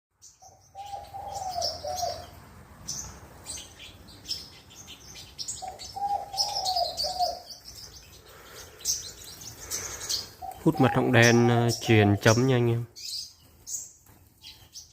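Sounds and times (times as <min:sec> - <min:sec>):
bird chirping and twittering: 0:00.1 - 0:14.9
lower cooing call: 0:00.4 - 0:02.4, 0:05.6 - 0:07.8, 0:08.4 - 0:12.9.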